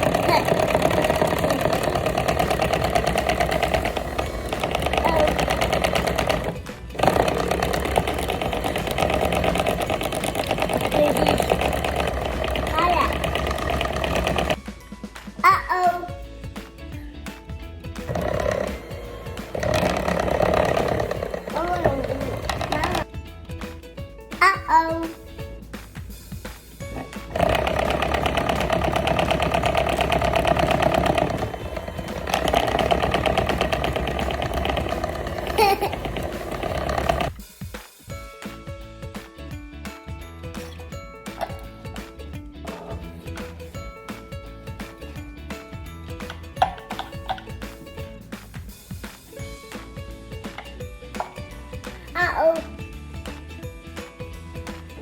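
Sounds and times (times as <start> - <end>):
small motor with clicking rattle: 0.0 - 14.6, 18.1 - 23.1, 27.3 - 37.4.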